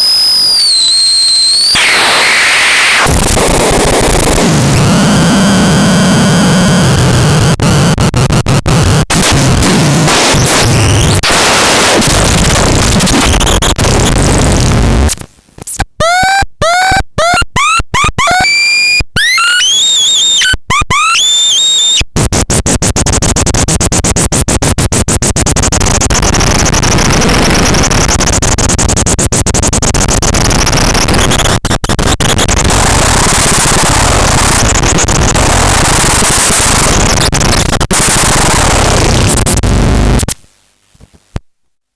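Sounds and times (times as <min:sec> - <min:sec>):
glitchy stuttering chirps and clicks: 0:00.0 - 0:40.4
harsh electronic noise music: 0:01.6 - 0:40.3.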